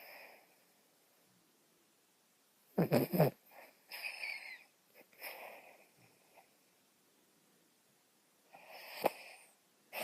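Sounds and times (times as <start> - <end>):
dog snoring: 2.8 - 4.6, 8.6 - 10.0.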